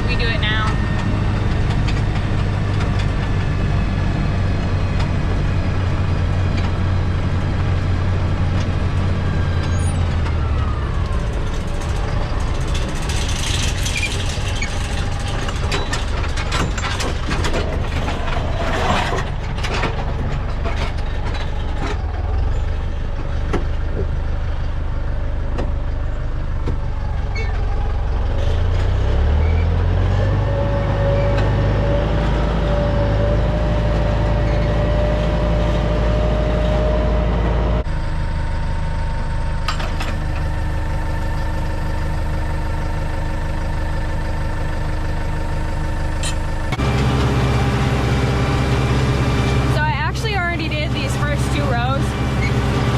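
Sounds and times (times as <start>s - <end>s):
rattling and clanking: 0.0s - 24.3s
tractor engine running: 0.0s - 52.9s.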